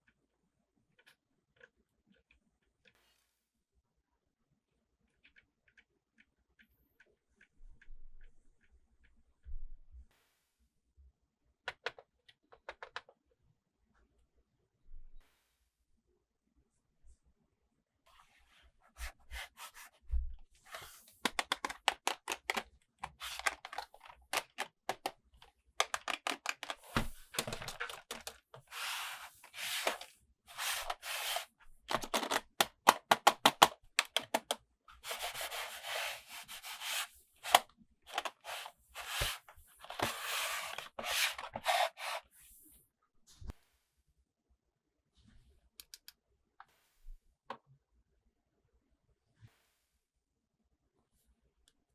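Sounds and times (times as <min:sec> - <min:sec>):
packaging rubbing and scraping: 0:20.6 - 0:25.1, 0:25.8 - 0:42.3.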